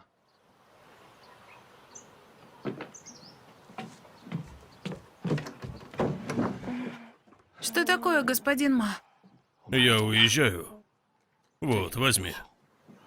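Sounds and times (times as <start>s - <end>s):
outdoor ambience: 0.0s - 13.0s
knocks and clatters: 3.7s - 7.5s.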